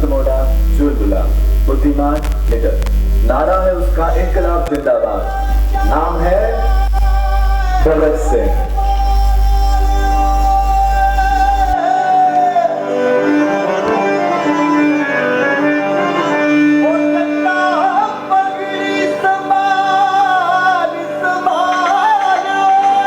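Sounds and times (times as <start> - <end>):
song with sustained instruments: 5.3 - 23.0.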